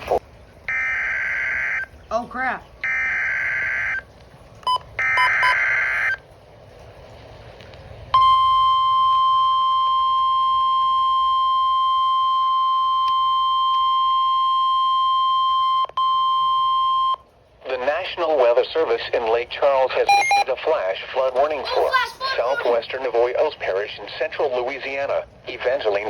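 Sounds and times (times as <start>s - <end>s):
steady warning alarm tone: 0.7s - 2.0s, 2.8s - 4.0s, 4.7s - 6.2s, 8.2s - 17.2s, 20.1s - 20.5s.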